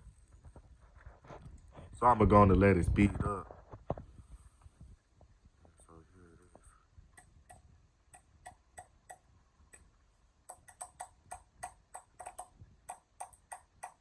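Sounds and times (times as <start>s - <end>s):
fan blades ticking on finger: 10.5s - 14.0s.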